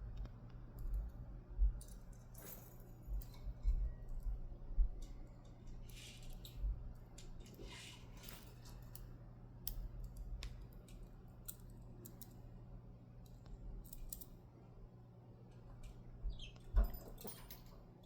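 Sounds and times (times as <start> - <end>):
low steady hum: 0.0 - 18.0
small metallic clicks of lock parts: 8.3 - 12.4, 13.2 - 14.4.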